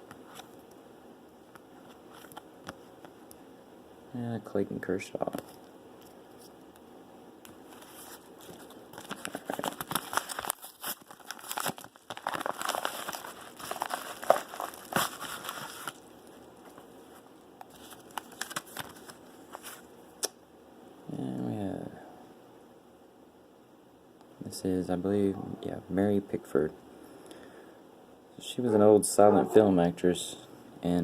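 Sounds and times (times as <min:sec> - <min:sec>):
packaging crinkling and tearing: 0:07.7 - 0:16.8, 0:17.7 - 0:19.9.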